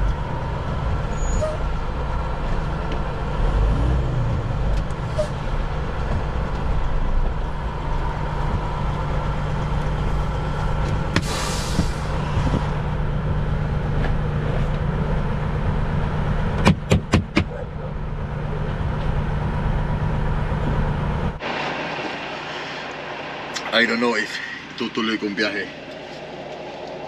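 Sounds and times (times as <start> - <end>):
diesel engine idling: 0.0 - 27.0
short hiss: 11.2 - 12.1.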